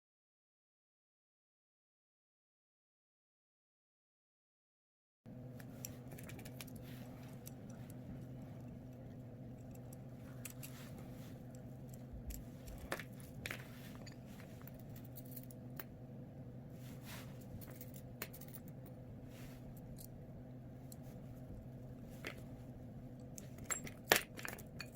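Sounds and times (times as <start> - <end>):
low electrical hum: 5.3 - 24.9
small parts clicking and tapping: 5.6 - 10.8, 11.4 - 16.0, 17.5 - 19.0, 19.7 - 20.2, 20.9 - 24.9.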